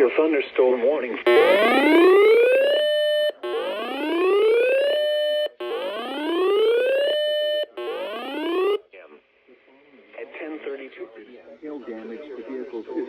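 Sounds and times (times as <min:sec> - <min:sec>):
electronic whooping alert tone: 0:01.3 - 0:08.8.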